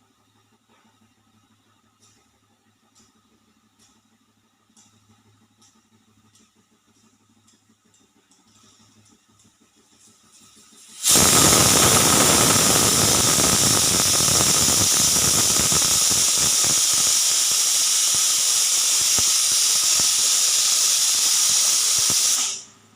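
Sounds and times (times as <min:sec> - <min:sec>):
pressure cooker steam hiss: 0:10.0 - 0:22.9
crackling splutter: 0:11.0 - 0:16.7.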